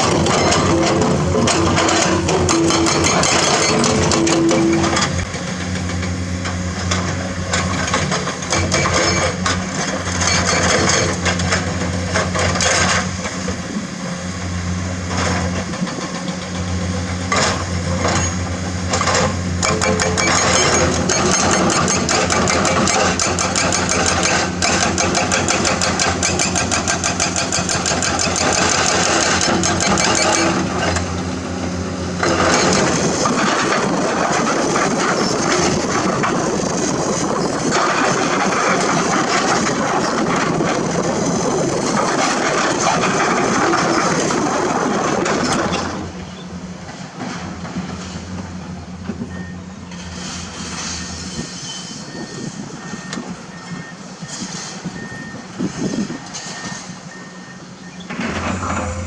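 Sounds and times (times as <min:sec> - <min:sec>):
rapid clatter: 0:00.0 - 0:13.4, 0:18.9 - 0:31.2, 0:32.2 - 0:46.2
excavator diesel engine running: 0:00.0 - 0:59.0.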